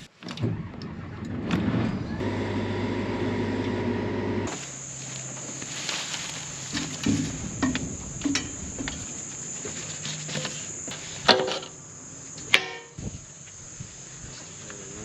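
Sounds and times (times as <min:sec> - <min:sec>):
crickets chirring: 0:04.4 - 0:15.0.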